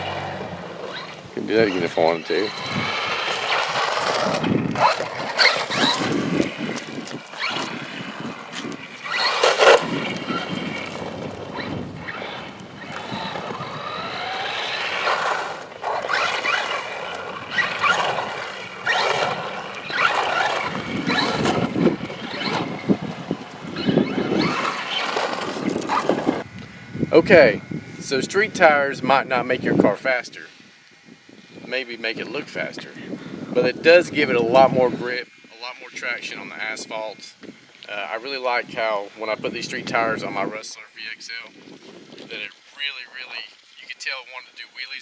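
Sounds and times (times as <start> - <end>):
tires on pavement: 0.0 - 28.1
electric motor whining: 0.0 - 28.5.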